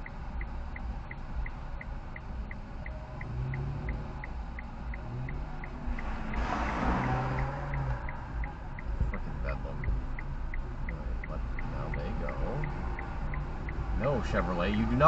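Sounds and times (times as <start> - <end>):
car engine idling: 0.0 - 15.0
turn signal ticking: 0.0 - 15.0
vehicle passing on wet road: 5.8 - 8.2.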